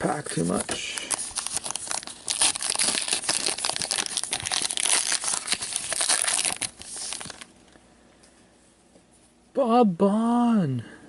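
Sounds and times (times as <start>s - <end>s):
wrapper crinkling and tearing: 0.0s - 7.5s.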